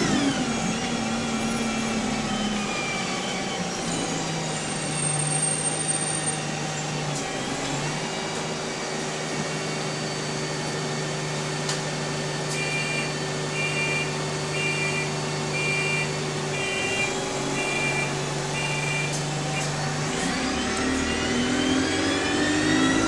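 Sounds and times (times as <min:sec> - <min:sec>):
bus idling hum: 0:00.0 - 0:21.9
two-tone electronic beep: 0:12.6 - 0:19.7.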